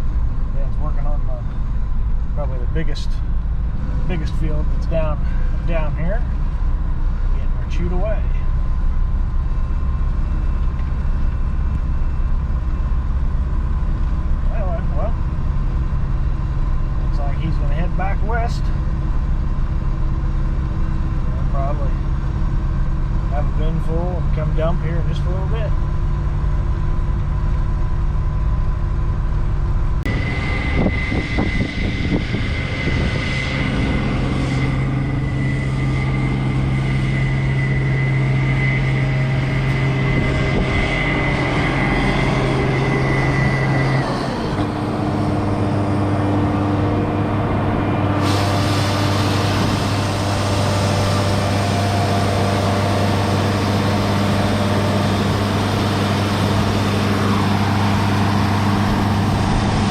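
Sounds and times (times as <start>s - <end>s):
truck engine running: 0.0s - 59.9s
thin high whine: 30.0s - 59.9s.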